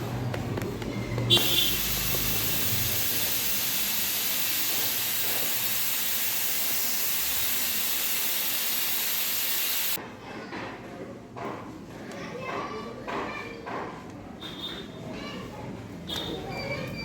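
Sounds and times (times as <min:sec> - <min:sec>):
steady hiss: 0:01.4 - 0:10.0.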